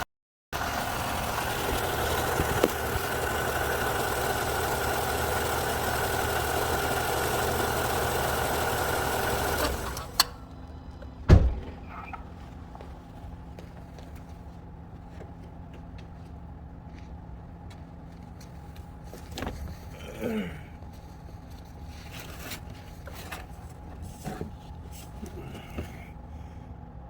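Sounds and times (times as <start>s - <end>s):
car engine idling: 0.6s - 19.9s
loud thump: 11.2s - 11.9s.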